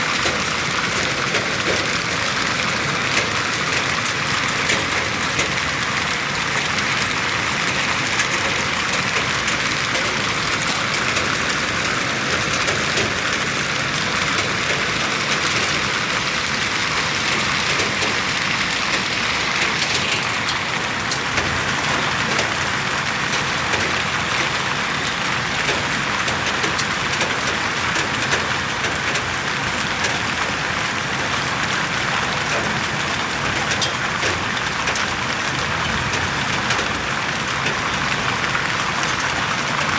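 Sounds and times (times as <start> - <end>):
heavy rain with hail: 0.0 - 39.9.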